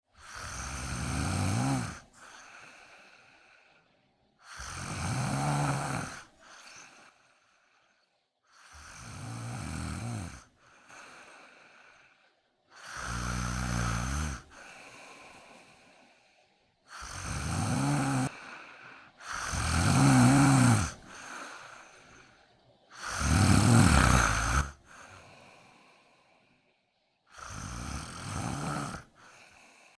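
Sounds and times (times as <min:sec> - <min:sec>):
cat snoring: 0:00.2 - 0:02.9, 0:04.4 - 0:07.0, 0:08.5 - 0:12.0, 0:12.7 - 0:15.3, 0:16.9 - 0:22.3, 0:22.9 - 0:25.8, 0:27.3 - 0:29.4
cat breathing softly: 0:02.0 - 0:04.9, 0:10.3 - 0:13.1, 0:14.0 - 0:17.4, 0:20.8 - 0:23.2, 0:24.1 - 0:28.2, 0:29.0 - 0:30.0.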